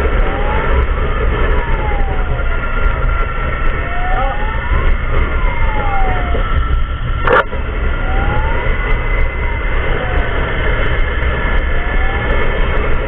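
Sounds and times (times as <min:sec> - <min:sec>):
emergency siren wailing: 0:00.0 - 0:13.0
vehicle and wind rumble: 0:00.0 - 0:13.0
sharp click: 0:07.2 - 0:07.5.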